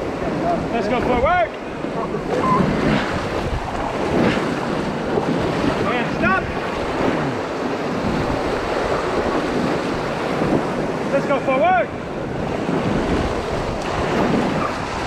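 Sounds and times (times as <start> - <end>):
whitewater rushing and splashing: 0.0 - 15.0
wind buffeting microphone: 0.0 - 15.0.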